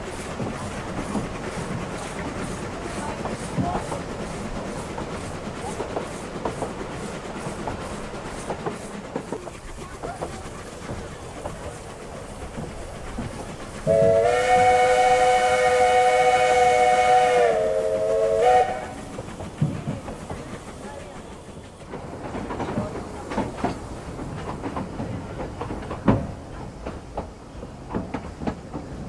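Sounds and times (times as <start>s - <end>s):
steam whistle blast: 13.8s - 19.1s.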